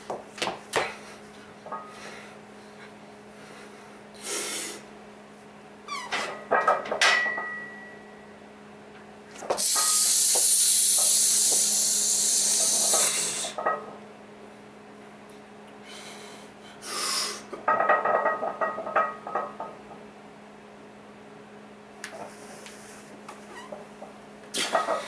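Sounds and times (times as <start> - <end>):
spraying hiss: 9.6 - 13.5.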